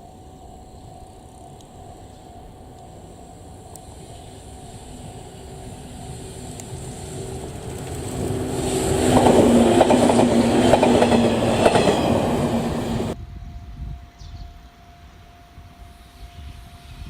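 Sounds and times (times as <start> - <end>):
train hum: 0.0 - 17.0
train wheels clattering over rail joints: 6.5 - 13.2.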